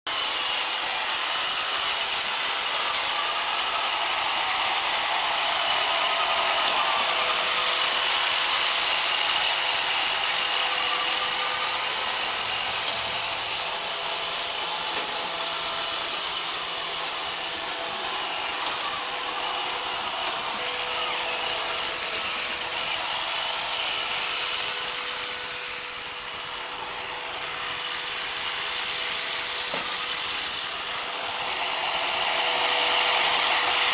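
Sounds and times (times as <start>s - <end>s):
robot vacuum running: 0.1s - 33.9s.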